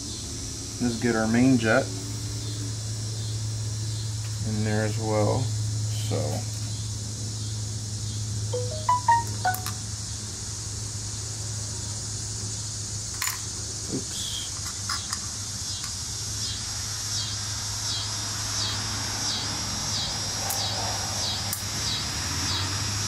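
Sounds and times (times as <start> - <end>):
faint high chirp: 8.6 - 9.8.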